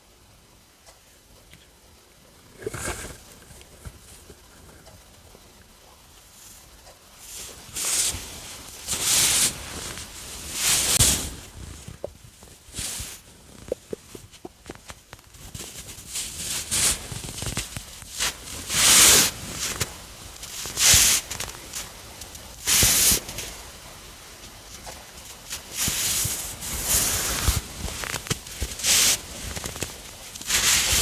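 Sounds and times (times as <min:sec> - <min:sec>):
stomach gurgling and rumbling: 0:02.2 - 0:06.2, 0:09.5 - 0:22.4, 0:24.5 - 0:31.0.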